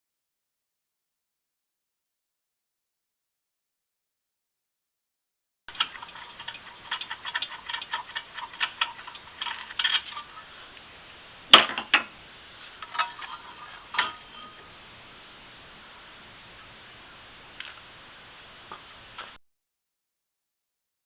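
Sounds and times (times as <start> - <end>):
metal tools clinking: 12.8 - 14.6.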